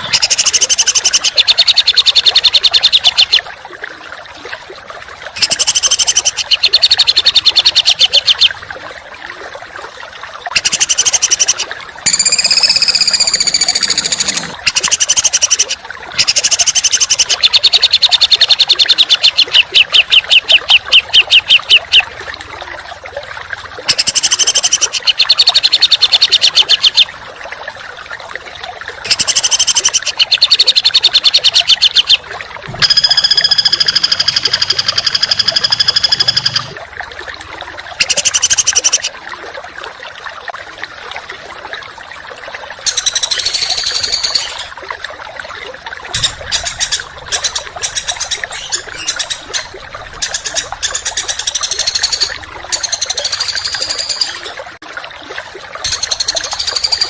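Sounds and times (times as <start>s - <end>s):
songbird harsh repeated notes: 5.4s - 8.5s, 10.6s - 22.0s, 29.1s - 36.7s.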